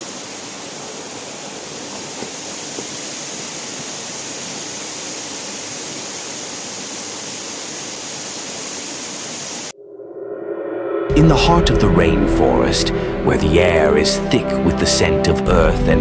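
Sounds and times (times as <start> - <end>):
waterfall rushing: 0.0 - 9.7.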